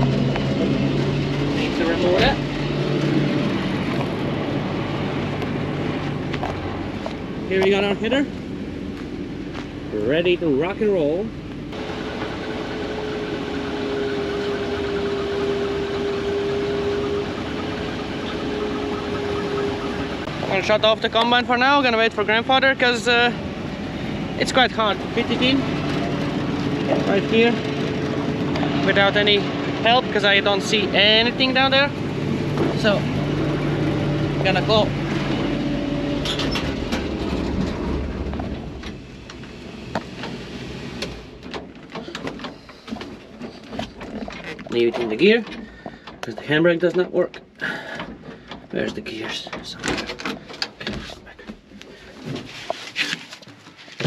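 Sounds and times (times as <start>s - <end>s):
combine harvester engine running: 0.0s - 54.0s
sharp clicks and knocks: 41.0s - 54.0s.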